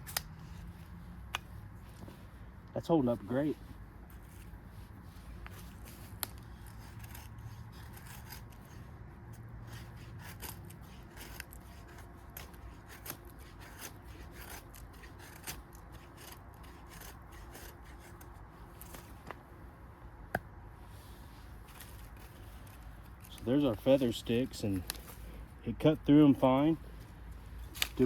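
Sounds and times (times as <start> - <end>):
knife scraping wooden stick: 4.1 - 19.3.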